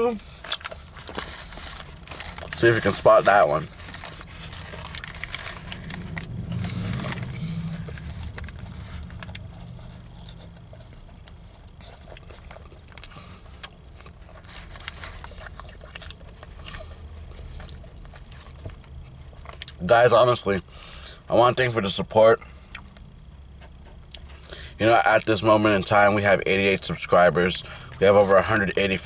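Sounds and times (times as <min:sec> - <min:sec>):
low steady hum: 0:00.0 - 0:29.0
person chewing a sandwich: 0:00.2 - 0:19.9, 0:22.4 - 0:24.8
paper wrapper crackling: 0:00.4 - 0:10.9, 0:14.0 - 0:16.7.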